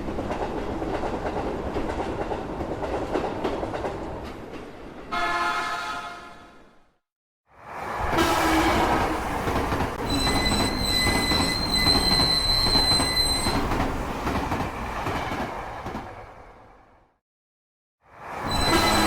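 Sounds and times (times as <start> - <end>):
train wheels on rails: 0.0 - 5.2, 7.7 - 16.8, 18.2 - 19.0
high-pitched wheel squeal: 10.0 - 13.7, 18.4 - 19.0.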